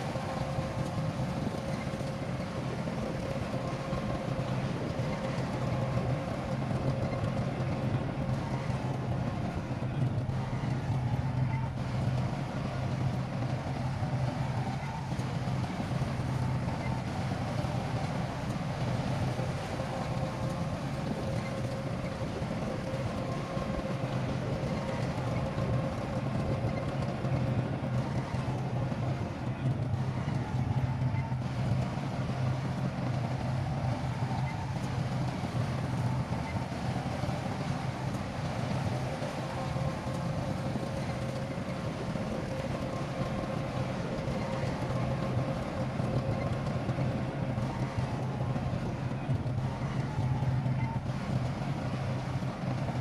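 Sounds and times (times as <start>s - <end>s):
faint steady whine: 0.0s - 53.0s
heavy diesel engine drone: 0.0s - 53.0s.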